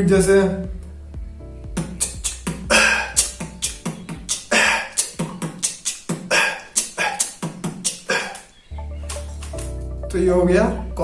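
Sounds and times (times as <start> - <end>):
vocal beatbox: 1.7 - 8.5.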